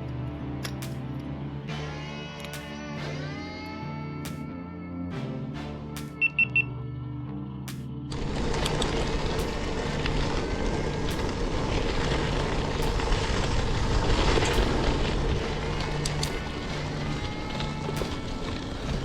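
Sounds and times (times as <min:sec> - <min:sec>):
background music: 0:00.0 - 0:19.0
loud steady rushing noise: 0:07.7 - 0:19.0.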